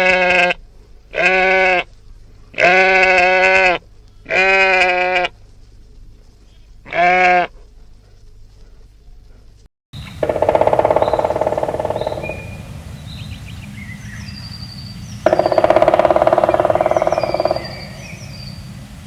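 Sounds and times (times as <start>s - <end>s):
sheep bleating: 0.0s - 1.9s, 2.6s - 5.3s, 6.9s - 7.5s.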